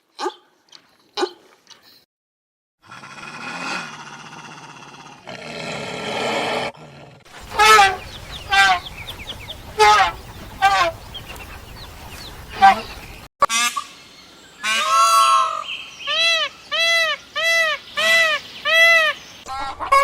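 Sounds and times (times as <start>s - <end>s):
farm animal calls: 7.3s - 13.6s.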